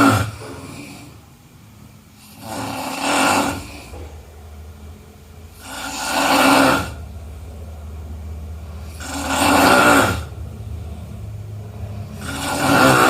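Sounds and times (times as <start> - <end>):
person snoring: 2.2 - 4.1, 5.5 - 7.0, 8.8 - 11.1, 11.9 - 13.0.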